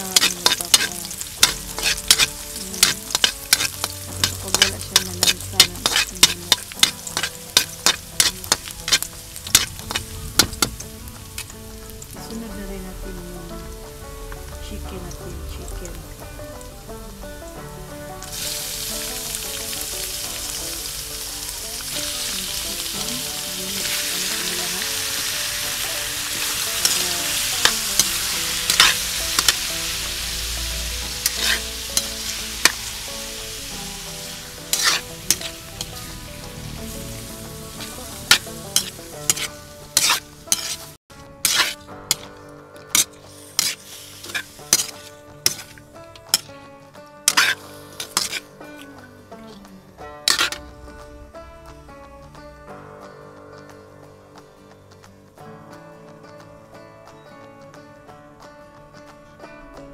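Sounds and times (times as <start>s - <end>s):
utensil scraping and clicking pan: 0.0s - 11.6s, 23.8s - 30.0s, 31.0s - 33.0s, 33.9s - 46.6s, 47.3s - 49.6s, 50.2s - 50.7s
chicken sizzling in pan: 0.0s - 46.6s, 47.2s - 51.1s.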